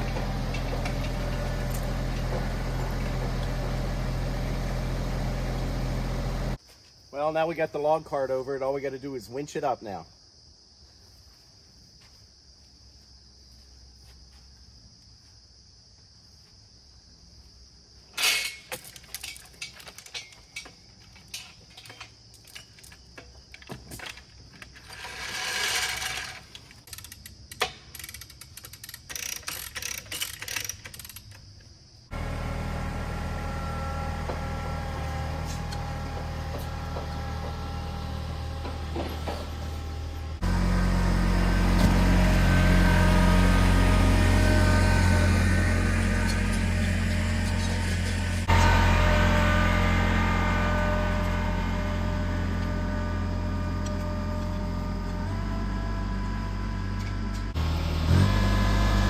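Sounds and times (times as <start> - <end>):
winch clanking and ratcheting: 0.0 - 4.2, 18.2 - 31.4
engine running steadily: 0.0 - 6.6, 32.1 - 59.0
insects chirring: 6.6 - 32.1.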